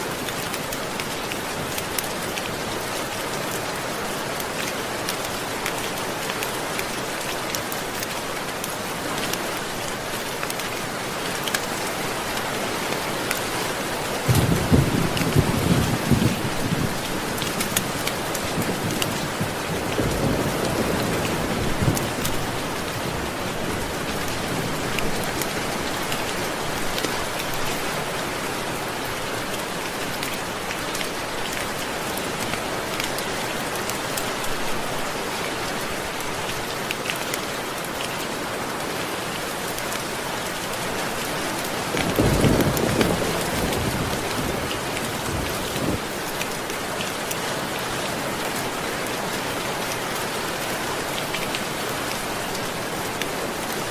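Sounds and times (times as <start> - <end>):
steady rain falling: 0.0 - 53.9
low rumble of thunder: 14.3 - 17.3, 18.5 - 22.9, 42.0 - 46.1.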